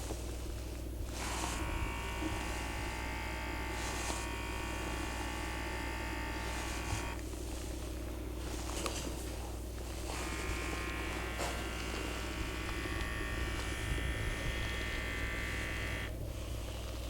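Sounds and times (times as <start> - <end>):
constant low hum: 0.0 - 17.0
small electric motor buzzing: 1.0 - 7.4, 9.8 - 17.0.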